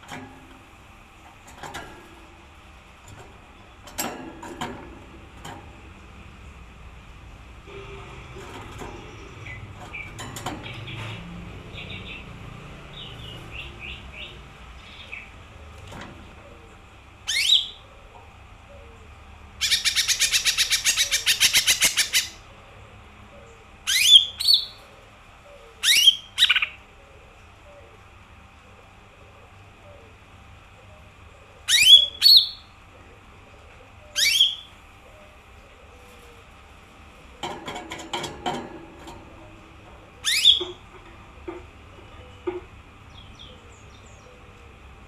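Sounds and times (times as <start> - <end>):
bird singing: 9.0 - 15.4, 17.2 - 18.0, 19.6 - 22.4, 23.4 - 26.8, 31.6 - 32.8, 34.0 - 36.1, 40.0 - 44.9.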